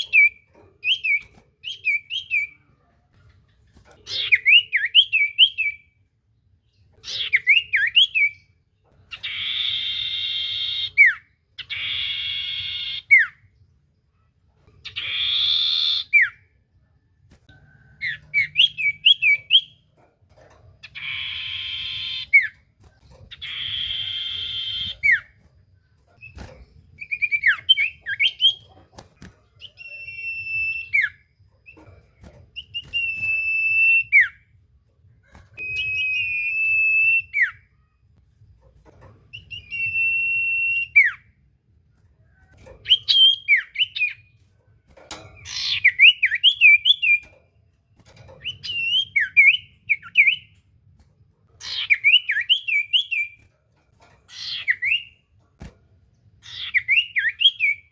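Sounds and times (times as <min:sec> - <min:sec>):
bird whistling and twittering: 0:00.0 - 0:02.6, 0:04.1 - 0:06.0, 0:07.0 - 0:08.5, 0:09.1 - 0:13.4, 0:14.8 - 0:16.5, 0:18.0 - 0:20.0, 0:20.8 - 0:22.7, 0:23.3 - 0:25.5, 0:26.1 - 0:34.5, 0:35.3 - 0:37.7, 0:39.3 - 0:41.4, 0:42.4 - 0:44.4, 0:45.4 - 0:47.4, 0:48.0 - 0:50.6, 0:51.6 - 0:53.5, 0:54.3 - 0:55.2, 0:56.4 - 0:57.9
harsh rasping bird calls: 0:14.8 - 0:16.4, 0:20.8 - 0:22.7, 0:23.3 - 0:25.4, 0:45.4 - 0:47.3, 0:51.6 - 0:53.5, 0:54.3 - 0:55.2, 0:56.4 - 0:57.9.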